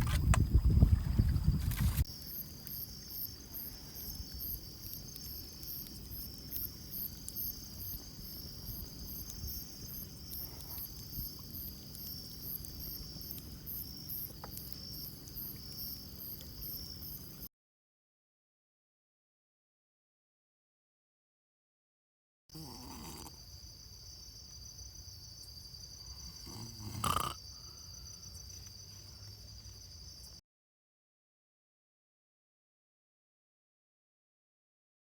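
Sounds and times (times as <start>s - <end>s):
crickets trilling: 0.0s - 17.5s, 22.6s - 30.4s.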